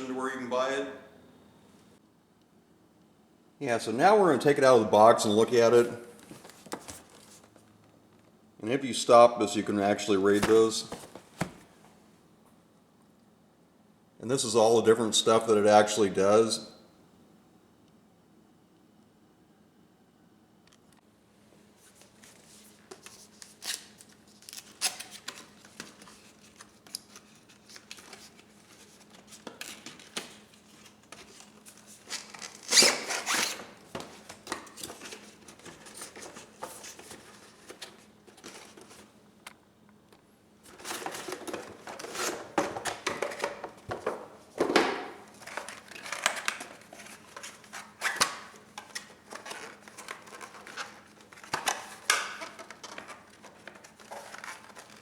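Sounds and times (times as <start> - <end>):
packaging rustling and tearing: 22.2 - 39.1, 40.7 - 43.6, 45.2 - 55.0.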